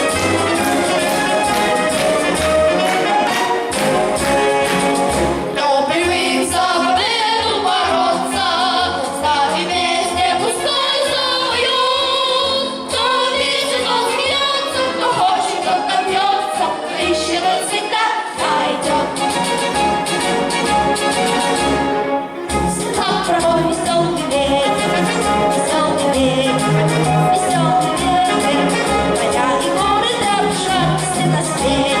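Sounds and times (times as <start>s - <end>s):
orchestral music with brass: 0.0s - 32.0s
person singing with vibrato: 22.7s - 32.0s.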